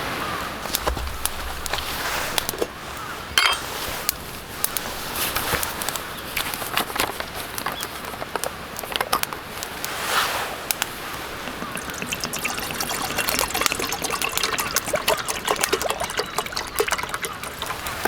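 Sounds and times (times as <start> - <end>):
campfire crackling and popping: 4.0 - 18.0.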